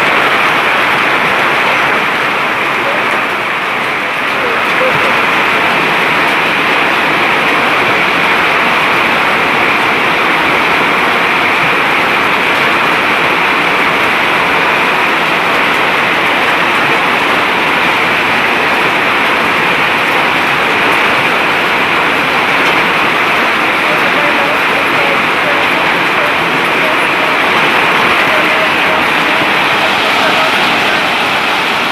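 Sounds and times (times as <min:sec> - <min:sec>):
hail and heavy rain falling: 0:00.0 - 0:31.9.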